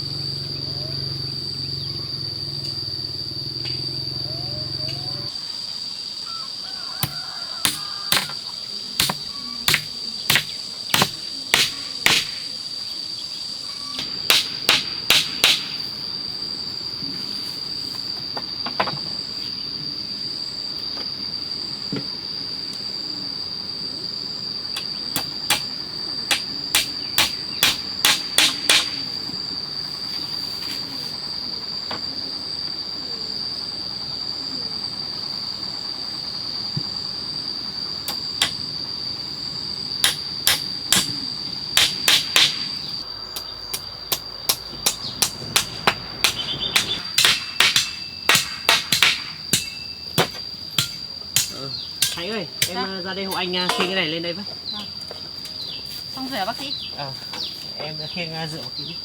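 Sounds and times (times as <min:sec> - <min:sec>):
high-pitched insect drone: 0:00.0 - 0:59.0
hammer nailing bamboo slats: 0:07.6 - 0:08.4, 0:09.0 - 0:12.4, 0:14.0 - 0:15.8, 0:25.2 - 0:25.7, 0:26.3 - 0:29.1, 0:40.0 - 0:41.2, 0:41.8 - 0:42.8, 0:43.7 - 0:52.8.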